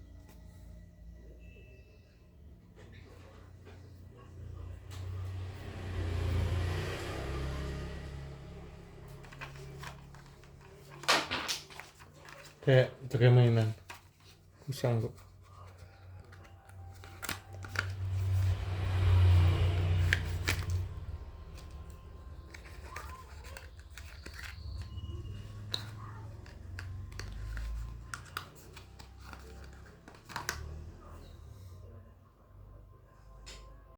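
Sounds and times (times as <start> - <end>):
packaging rubbing and rustling: 15.0 - 30.5.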